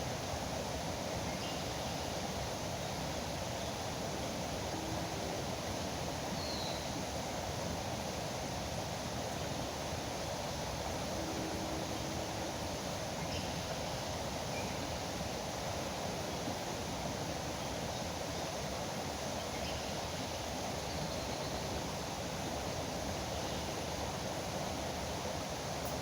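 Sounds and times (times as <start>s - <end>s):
river water rushing: 2.2s - 19.4s.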